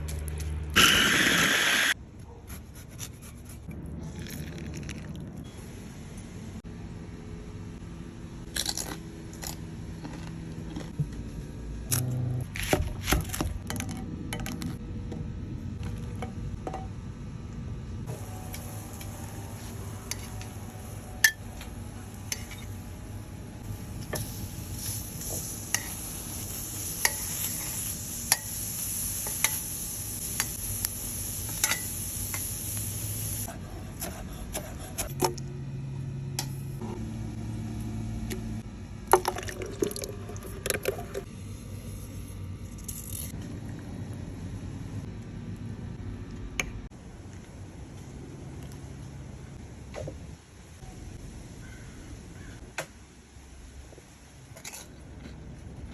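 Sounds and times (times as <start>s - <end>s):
food sizzling in a pan: 24.2s - 33.5s.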